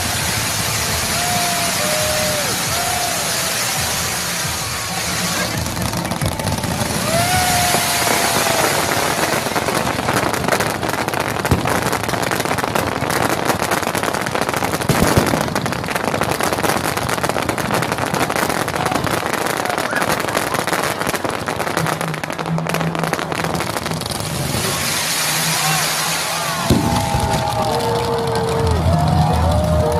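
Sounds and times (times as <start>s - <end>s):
fireworks crackling pops: 0.0s - 29.9s
loud fireworks burst: 0.0s - 29.9s.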